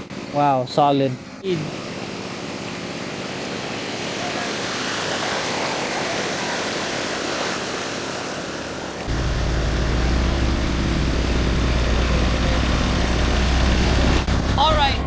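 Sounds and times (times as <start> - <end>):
vehicle running with hiss: 9.0 - 14.9.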